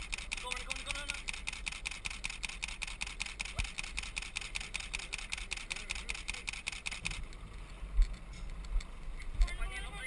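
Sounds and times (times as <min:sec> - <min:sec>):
fishing reel ratchet clicking: 0:00.0 - 0:07.2.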